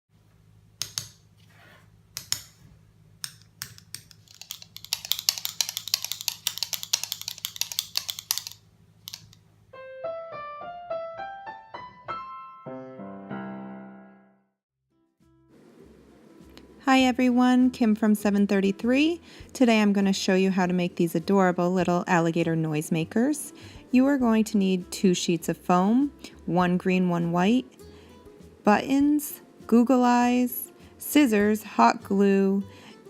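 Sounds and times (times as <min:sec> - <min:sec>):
toy noisemaker clacking: 0:04.3 - 0:09.4
piano-like tune: 0:09.7 - 0:14.6.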